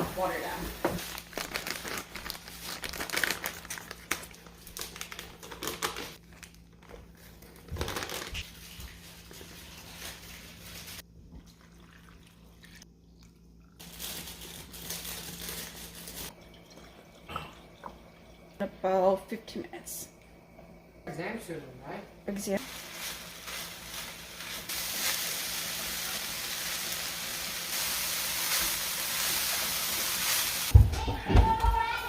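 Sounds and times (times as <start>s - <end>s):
rustling and crinkling: 0.0s - 11.0s, 22.6s - 25.3s
faint steady hum: 16.3s - 24.6s.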